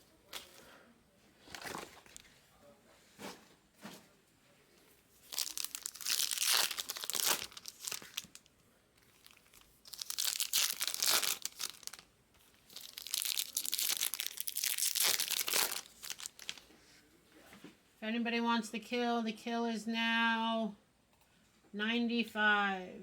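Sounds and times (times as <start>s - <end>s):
packaging crinkling: 5.2s - 16.7s.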